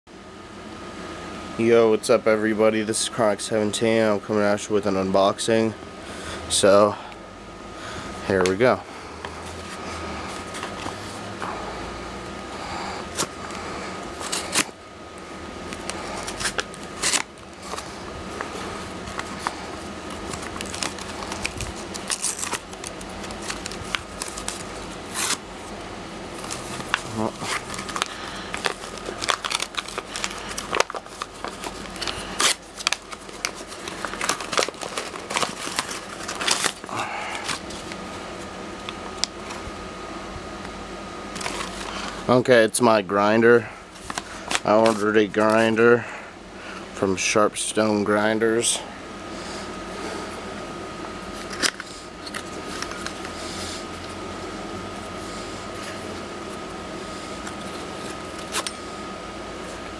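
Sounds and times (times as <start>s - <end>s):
package rustling and clicking: 15.7s - 25.4s, 26.4s - 38.0s
sharp clicks and rustles: 15.7s - 25.4s.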